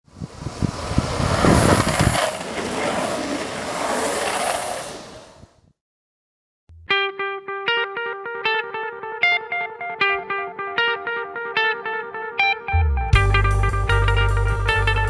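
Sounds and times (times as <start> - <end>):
wheels rolling on asphalt: 0.0 - 5.6.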